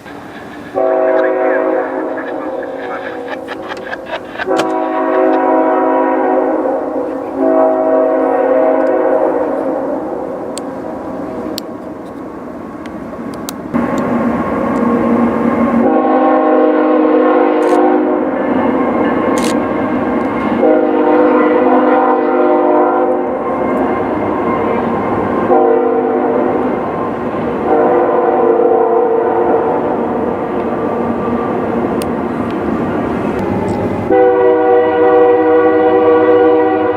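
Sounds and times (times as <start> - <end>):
train rumble: 0.0 - 36.9
train air horn chord: 0.7 - 3.0, 4.4 - 9.8, 15.8 - 18.4, 20.6 - 23.4, 25.4 - 26.7, 27.6 - 30.0, 34.1 - 36.9.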